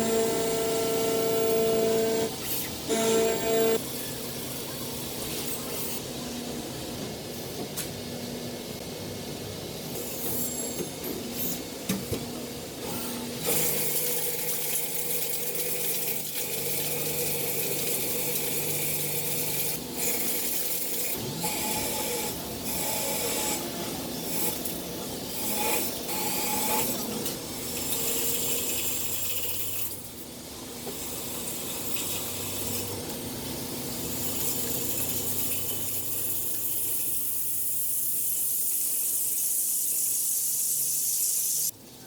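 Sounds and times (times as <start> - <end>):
metal lathe running: 0.0 - 3.9.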